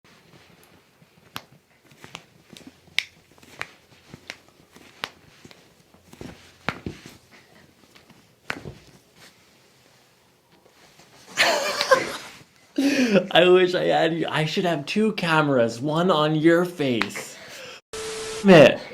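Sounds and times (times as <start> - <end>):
toe joints cracking: 0.6 - 9.1.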